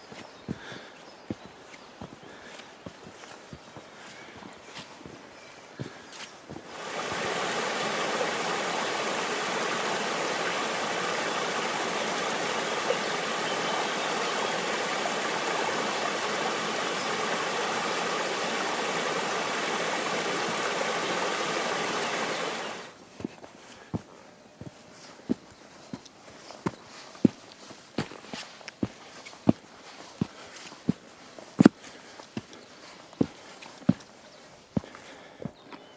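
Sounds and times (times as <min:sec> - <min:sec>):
stream rushing over rocks: 0:06.5 - 0:23.0.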